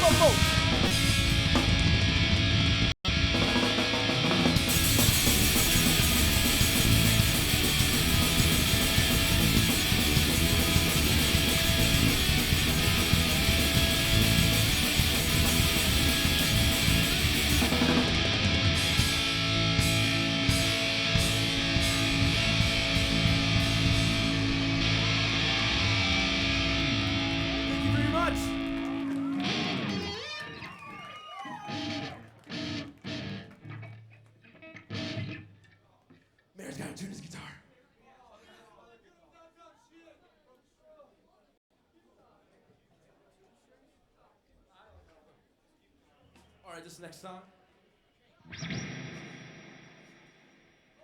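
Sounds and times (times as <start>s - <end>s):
long held guitar notes: 0.0s - 30.4s
live rock band playing: 0.0s - 30.8s, 31.7s - 34.1s, 34.8s - 35.5s.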